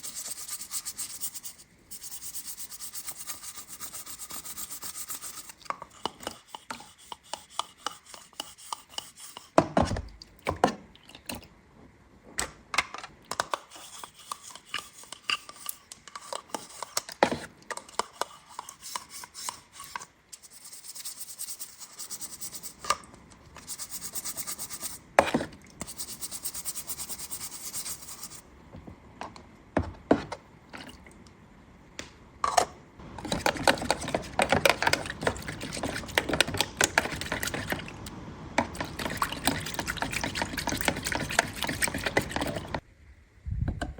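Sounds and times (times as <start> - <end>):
rubbing and scraping of packaging: 38.8 - 42.8.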